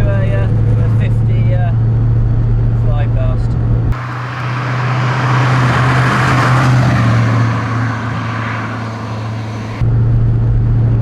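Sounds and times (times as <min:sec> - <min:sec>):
car engine drone: 0:03.9 - 0:09.8
road and wind rush: 0:03.9 - 0:09.9.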